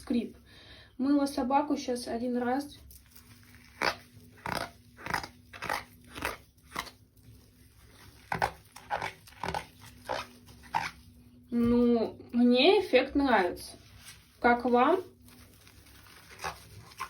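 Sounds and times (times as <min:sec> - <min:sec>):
wet dog coat squeaking: 0:03.0 - 0:07.0, 0:07.6 - 0:11.1, 0:15.3 - 0:17.0.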